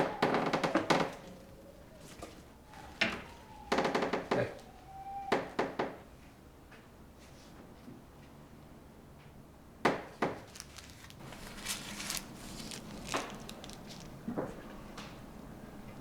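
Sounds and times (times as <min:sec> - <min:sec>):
sharp knocks: 0:09.8 - 0:10.5.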